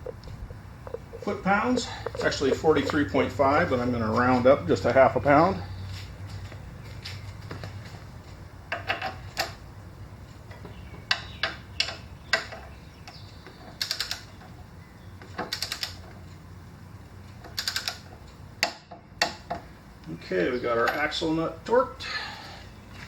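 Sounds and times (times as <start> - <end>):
rapid ratchet wrench clicks: 13.8 - 14.4, 15.4 - 16.0, 17.4 - 19.4.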